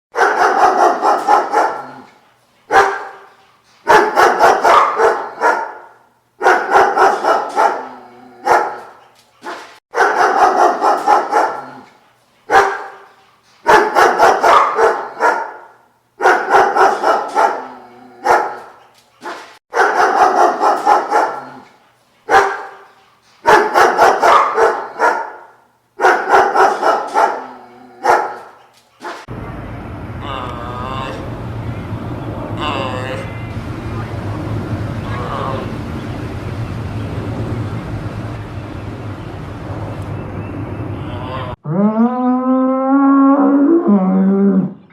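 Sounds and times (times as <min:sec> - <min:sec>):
dog barking: 0:00.1 - 0:02.1, 0:02.7 - 0:03.3, 0:03.9 - 0:11.9, 0:12.5 - 0:21.7, 0:22.3 - 0:29.3.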